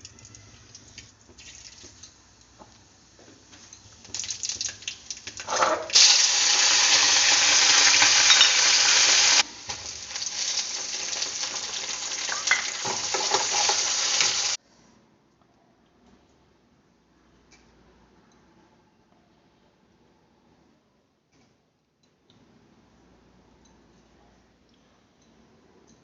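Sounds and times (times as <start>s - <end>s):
food sizzling in hot oil: 4.0s - 14.6s.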